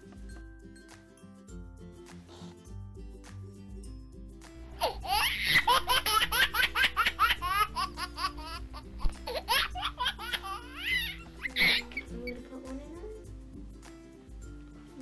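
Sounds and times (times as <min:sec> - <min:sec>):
background music: 0:00.0 - 0:15.0
high-pitched squeaky giggling: 0:09.3 - 0:12.4.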